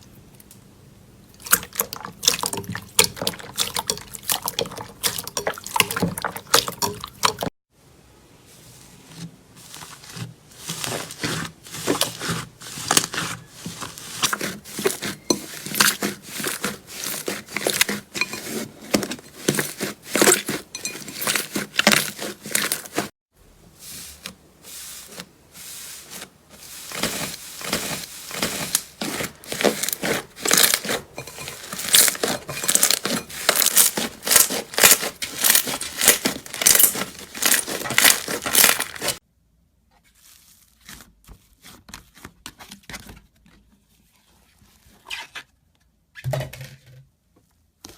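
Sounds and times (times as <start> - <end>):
slime crackling and popping: 29.6 - 31.0, 31.8 - 39.2.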